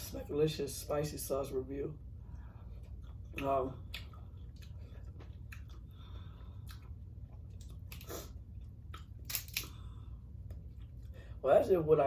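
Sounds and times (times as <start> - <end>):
person chewing and smacking: 2.6 - 11.2.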